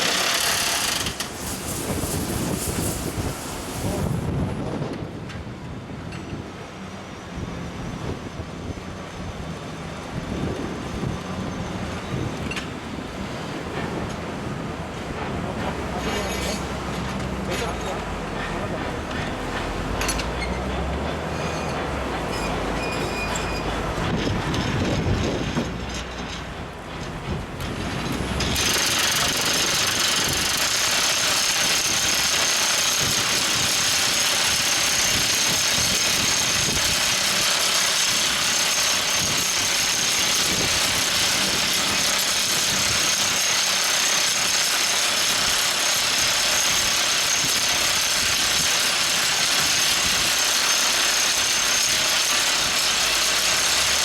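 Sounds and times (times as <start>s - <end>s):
rock drill hammering: 0.0s - 1.4s, 28.4s - 54.0s
drill rig engine running: 0.0s - 4.2s, 15.0s - 54.0s.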